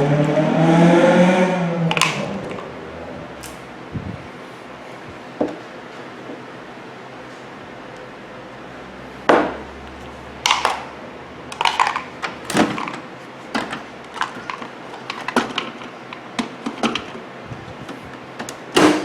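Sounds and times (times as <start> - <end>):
objects knocking and clicking: 1.9 - 2.7, 10.4 - 17.2.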